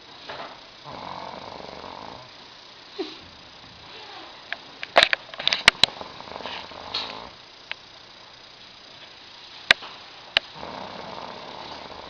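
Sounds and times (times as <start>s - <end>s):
man snoring: 0.8s - 2.4s, 6.0s - 7.4s, 10.5s - 12.0s.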